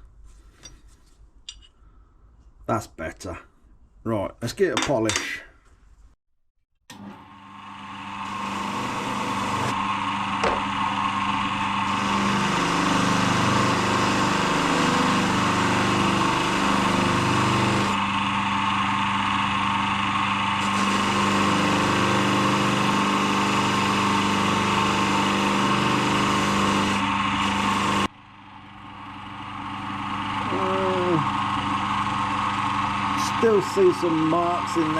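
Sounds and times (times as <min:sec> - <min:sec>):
polishing machine humming: 0:07.7 - 0:34.9.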